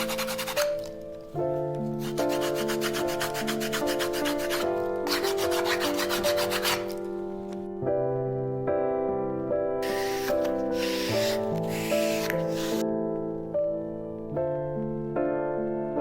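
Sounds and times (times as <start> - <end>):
sandpaper rubbing on wood: 0.0 - 0.7, 2.1 - 7.0, 9.8 - 12.8
background music: 0.0 - 16.0.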